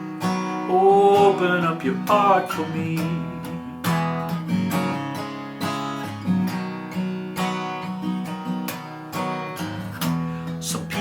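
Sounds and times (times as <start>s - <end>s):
acoustic guitar strumming chords: 0.0s - 11.0s.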